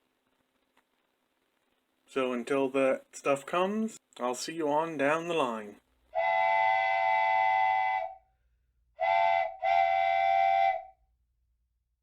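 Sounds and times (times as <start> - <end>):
steam locomotive whistle blasts: 6.2 - 8.2, 9.0 - 11.0.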